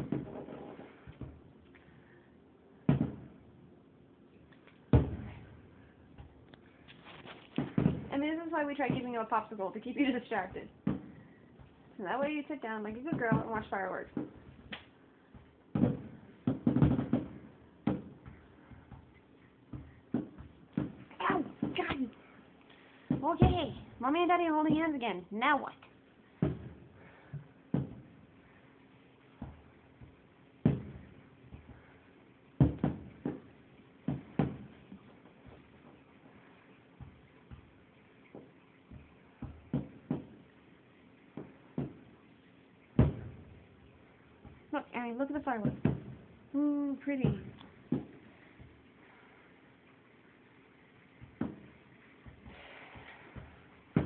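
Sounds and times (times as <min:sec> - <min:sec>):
fireworks booming: 0:02.8 - 0:03.5, 0:04.9 - 0:19.0, 0:23.0 - 0:25.1, 0:29.4 - 0:32.0, 0:42.9 - 0:44.6.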